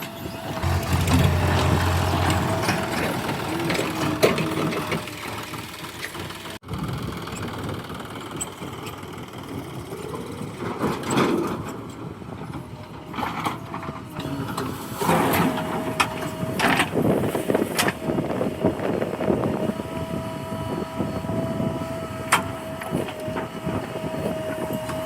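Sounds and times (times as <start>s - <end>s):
diesel engine running: 0.4s - 8.3s
thin whine: 0.6s - 4.2s.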